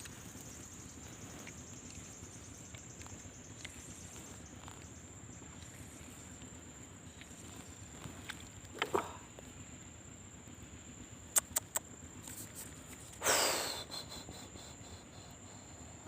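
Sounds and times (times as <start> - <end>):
high-pitched insect trill: 0.0 - 16.0
sharp clicks: 11.3 - 11.9.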